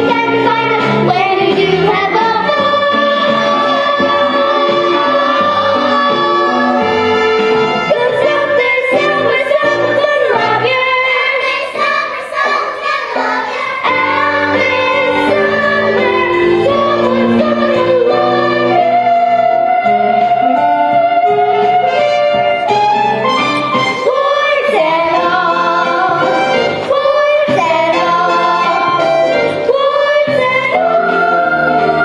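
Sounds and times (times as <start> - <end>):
person singing: 0.0 - 11.2, 14.0 - 22.2
musical accompaniment: 0.0 - 32.0.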